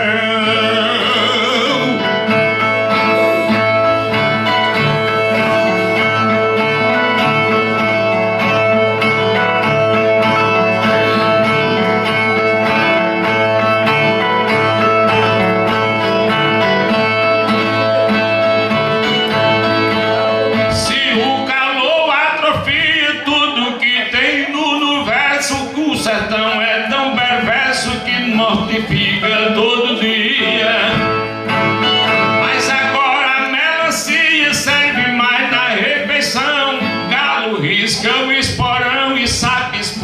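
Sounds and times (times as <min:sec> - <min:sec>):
person singing: 0:00.0 - 0:40.0
viola strummed: 0:00.0 - 0:40.0.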